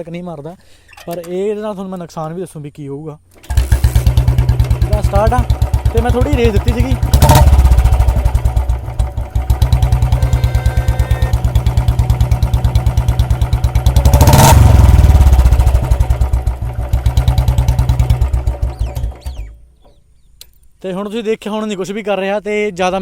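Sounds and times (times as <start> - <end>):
motorcycle engine thumping: 3.4 - 20.0.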